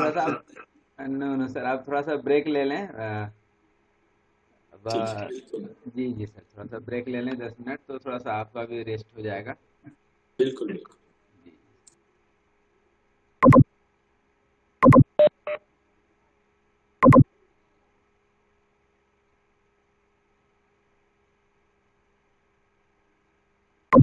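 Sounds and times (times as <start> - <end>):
short electronic beeps: 13.4 - 13.6, 14.8 - 15.6, 17.0 - 17.2.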